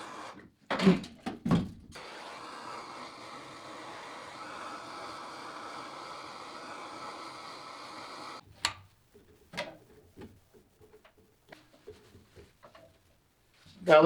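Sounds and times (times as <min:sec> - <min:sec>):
steady hiss: 0:02.0 - 0:09.1.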